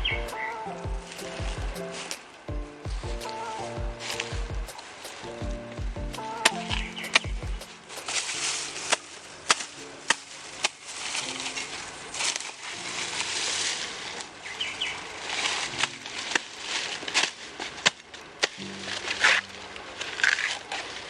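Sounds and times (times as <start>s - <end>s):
sharp knocks or snaps: 0.0s - 8.2s
rustling scraping noise: 1.0s - 2.4s, 6.5s - 21.0s.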